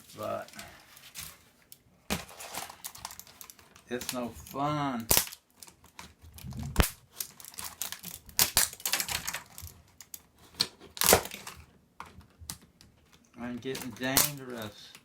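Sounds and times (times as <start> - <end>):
plastic keyboard parts cracking: 5.0 - 12.9, 13.6 - 15.0
sharp plastic snaps: 5.0 - 15.0.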